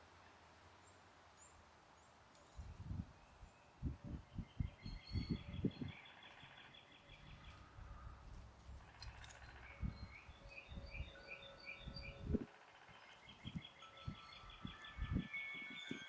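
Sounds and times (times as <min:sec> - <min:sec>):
songbirds chirping and trilling: 0:00.8 - 0:16.0
wind buffeting microphone: 0:02.6 - 0:06.1, 0:07.0 - 0:16.0.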